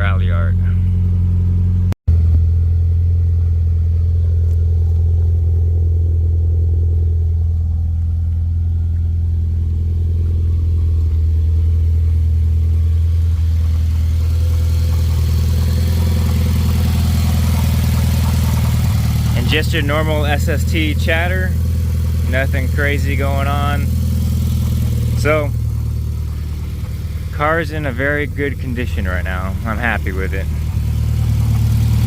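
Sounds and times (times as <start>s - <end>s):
car engine idling: 0.0s - 32.0s.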